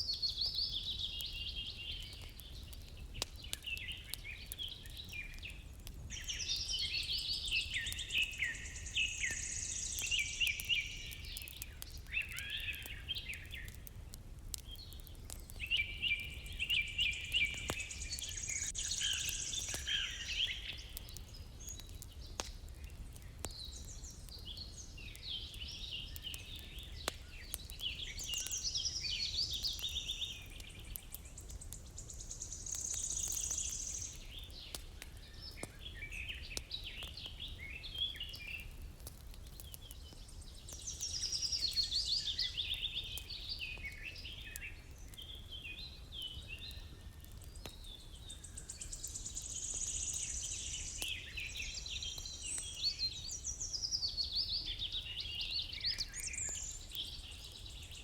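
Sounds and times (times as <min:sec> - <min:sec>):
songbirds chirping: 0:00.0 - 0:58.0
faint clicks: 0:20.7 - 0:23.6.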